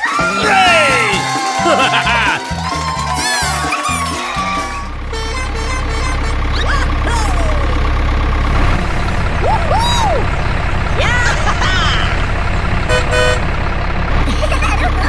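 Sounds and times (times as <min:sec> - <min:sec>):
tractor engine chugging: 0:00.0 - 0:15.0
whistle-like pitch glides: 0:00.9 - 0:05.0.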